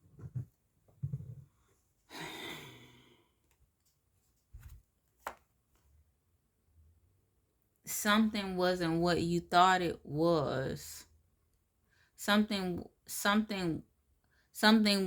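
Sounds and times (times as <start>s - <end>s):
woman sighing: 2.1s - 3.2s.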